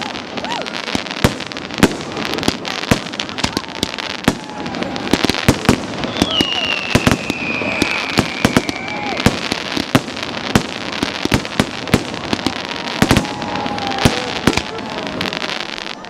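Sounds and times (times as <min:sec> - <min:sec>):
fireworks bangs and crackles: 0:00.0 - 0:16.0
whistling firework shell: 0:03.4 - 0:10.6.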